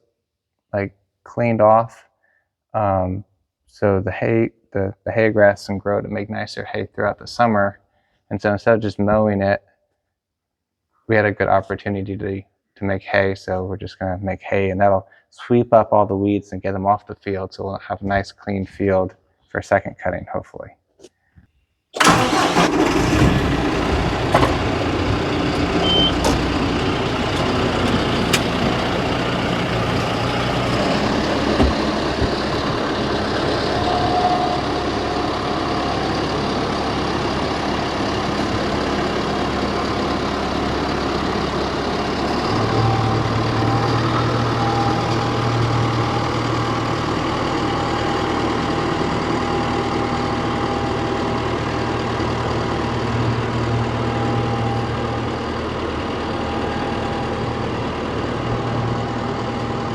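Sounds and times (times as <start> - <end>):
tractor diesel engine running: 22.0 - 59.9.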